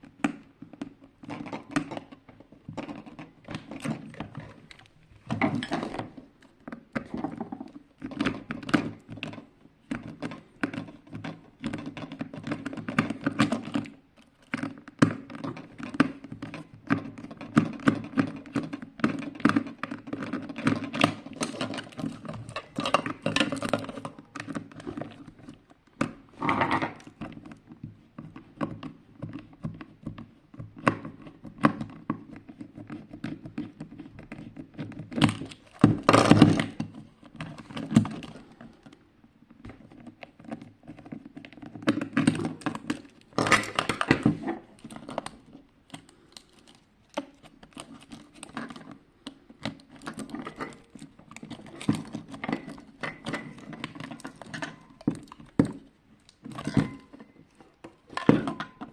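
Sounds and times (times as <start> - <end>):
plastic parts clicking and knocking: 0.0 - 58.9.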